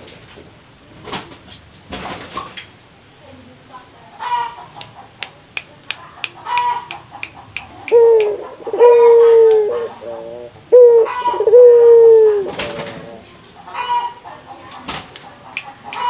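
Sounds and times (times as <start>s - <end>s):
dove cooing: 6.4s - 14.2s.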